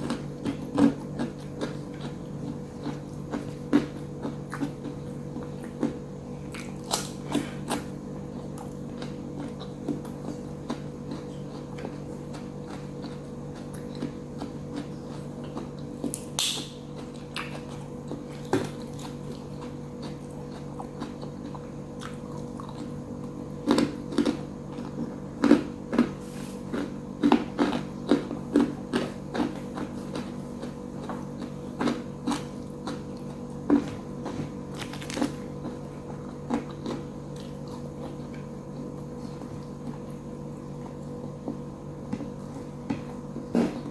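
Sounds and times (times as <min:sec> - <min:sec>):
chewing crunchy fried food: 0:00.0 - 0:43.9
steady low hum: 0:00.0 - 0:43.9.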